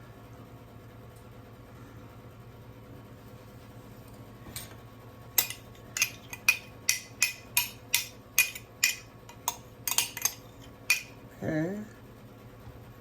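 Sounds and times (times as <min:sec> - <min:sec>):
metal utensil tapping dish: 0:05.4 - 0:11.2.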